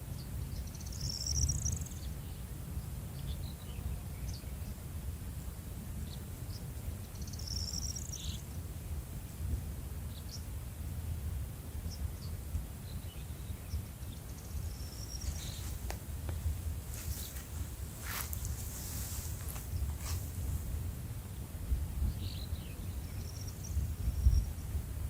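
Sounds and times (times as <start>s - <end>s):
faint click: 15.8s - 16.4s.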